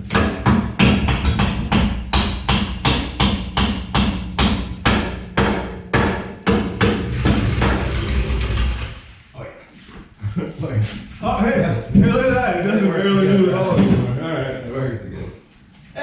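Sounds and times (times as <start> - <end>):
hammer blows: 0.0 - 9.0
low hum: 6.8 - 9.2.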